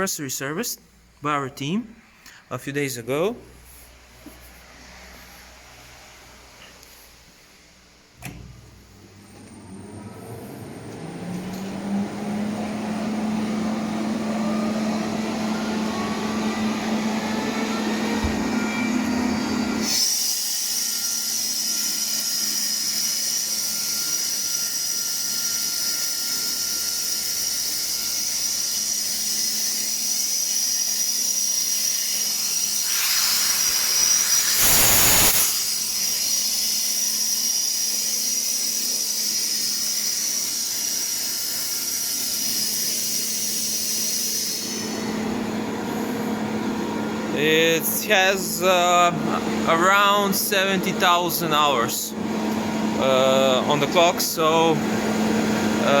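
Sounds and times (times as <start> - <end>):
compressor switch click: 8.2 - 8.6
compressor motor running: 8.2 - 56.0
high hiss of air: 32.2 - 38.8
loud air rush: 32.8 - 36.4.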